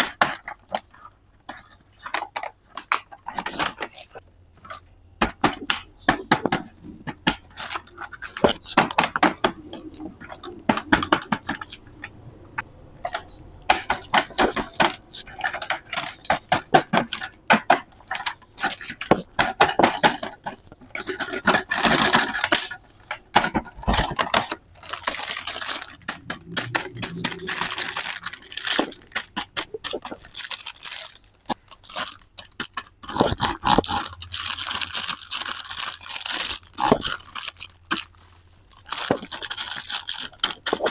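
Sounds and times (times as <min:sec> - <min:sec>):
plastic and metal toy clicks: 0:13.0 - 0:40.9
packaging tearing and crinkling: 0:13.1 - 0:17.4, 0:18.1 - 0:40.9.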